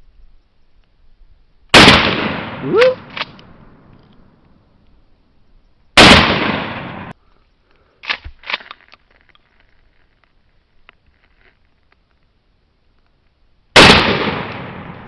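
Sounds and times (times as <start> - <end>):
shotgun blast with echo: 1.7 - 3.2, 6.0 - 7.1, 13.8 - 15.0.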